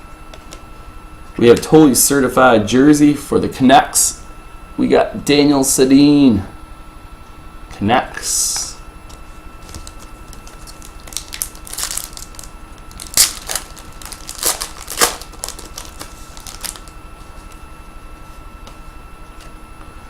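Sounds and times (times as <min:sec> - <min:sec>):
cards and packaging handled: 0:09.1 - 0:17.6.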